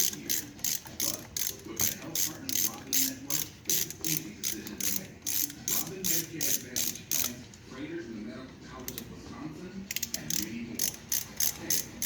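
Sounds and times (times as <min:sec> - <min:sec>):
ratchet wrench clicking: 0:00.0 - 0:07.4, 0:08.8 - 0:09.1, 0:09.9 - 0:12.0.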